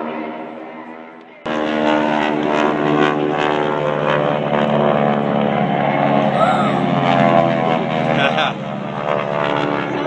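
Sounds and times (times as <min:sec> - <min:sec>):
propeller aircraft engines droning: 0:00.0 - 0:10.0.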